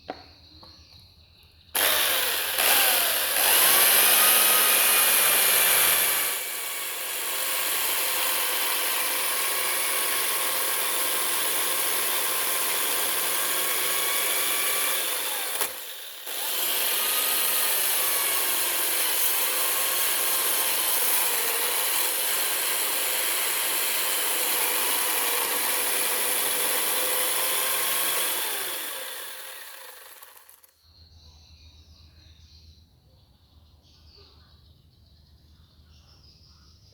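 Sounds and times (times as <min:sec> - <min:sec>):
power tool cutting wood: 0:01.8 - 0:30.7.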